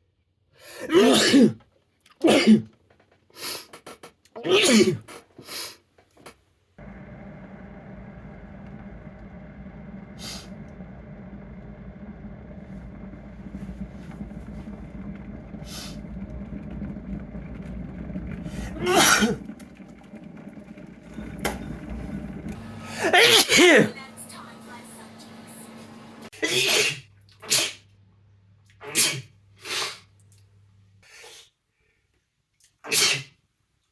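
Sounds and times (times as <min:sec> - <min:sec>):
person sneezing: 0:00.7 - 0:01.6, 0:02.2 - 0:02.7, 0:03.4 - 0:05.8, 0:22.8 - 0:23.9, 0:26.4 - 0:27.8, 0:28.8 - 0:30.0, 0:32.8 - 0:33.4
low background hum: 0:06.8 - 0:26.3
breathy sounds: 0:18.4 - 0:19.8, 0:22.5 - 0:23.8.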